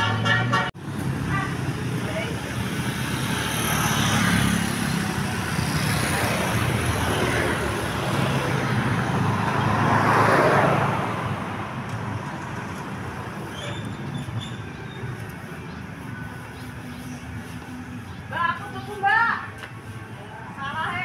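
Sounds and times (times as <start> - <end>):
vehicle passing close by: 1.2 - 14.4.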